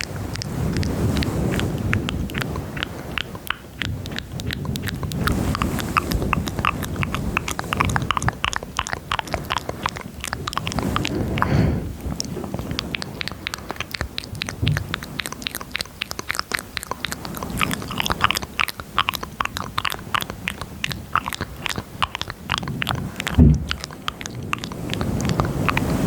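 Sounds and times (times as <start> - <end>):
wet mouth clicks and smacks: 0.0 - 26.0
low thump: 23.4 - 23.7.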